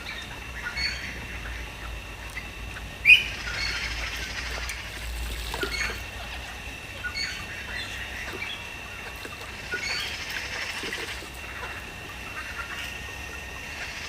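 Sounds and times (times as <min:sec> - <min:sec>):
light water pattering: 0:04.3 - 0:06.4
pet bird chirping: 0:05.6 - 0:08.7.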